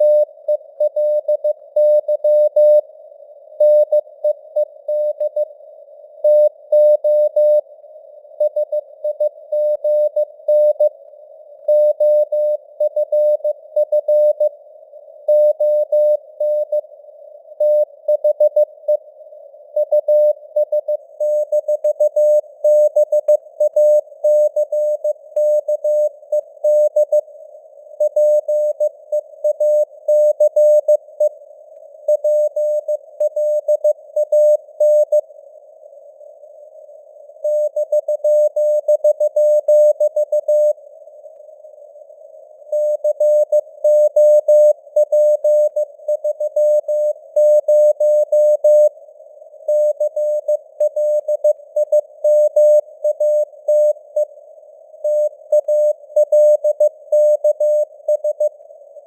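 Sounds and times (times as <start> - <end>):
morse code beeps: 55.1 - 58.6.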